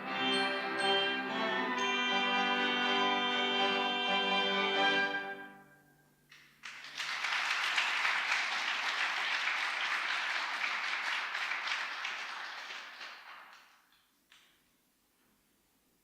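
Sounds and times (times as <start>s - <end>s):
audience applauding: 6.3s - 14.0s.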